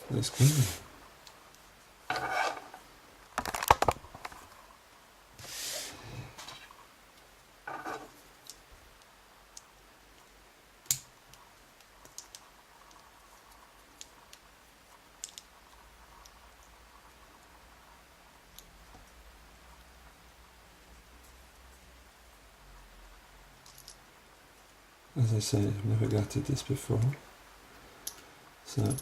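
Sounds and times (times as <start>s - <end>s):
metal rubbing scrape: 2.1s - 2.8s
small metal clicks and taps: 15.2s - 15.5s.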